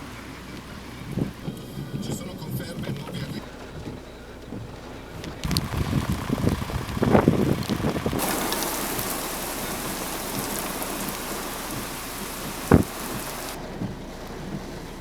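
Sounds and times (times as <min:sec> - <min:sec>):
heavy rain hissing: 0:05.4 - 0:13.6
low rumbling gusts: 0:05.4 - 0:13.6.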